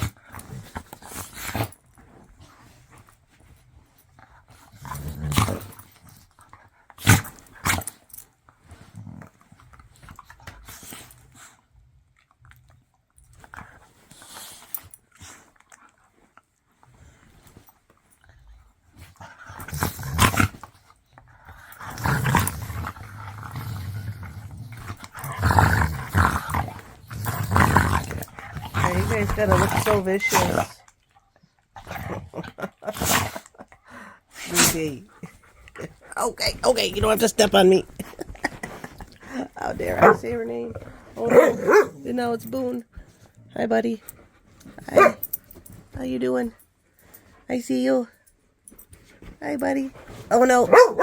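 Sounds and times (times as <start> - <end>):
dogs growling: 4.4 - 11.6, 18.3 - 31.0, 31.7 - 43.6, 44.6 - 45.6, 50.1 - 51.0.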